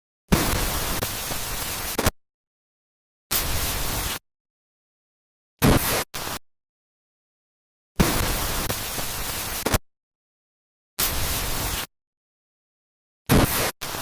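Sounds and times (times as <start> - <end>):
harsh static hiss bursts: 0.3 - 2.2, 3.3 - 4.2, 5.6 - 6.4, 8.0 - 9.8, 11.0 - 11.9, 13.3 - 14.0.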